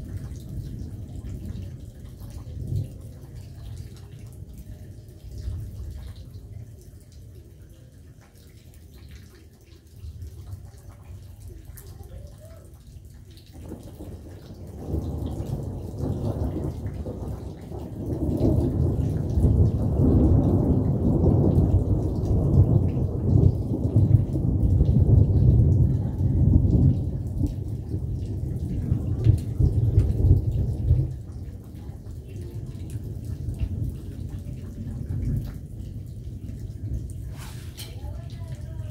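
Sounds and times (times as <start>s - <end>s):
rain falling: 0.0s - 38.9s
raindrop clicks: 0.0s - 38.9s
thunder rolling: 13.6s - 38.9s.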